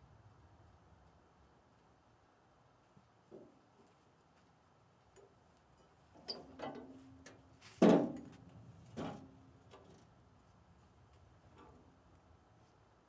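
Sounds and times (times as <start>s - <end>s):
metal clanks and knocks: 8.9s - 9.3s.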